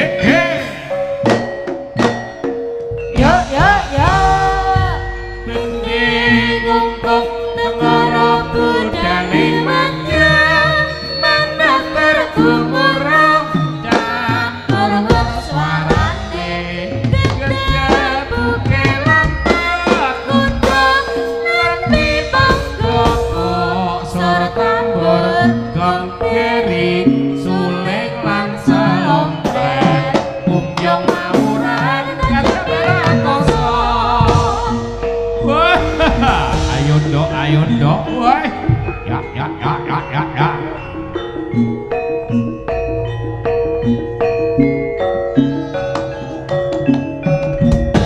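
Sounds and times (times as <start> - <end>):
drum strokes: 0.0 - 10.2, 13.6 - 24.7, 29.4 - 40.6
gong: 0.0 - 16.4, 30.8 - 48.0
high wavering melody: 0.0 - 48.0.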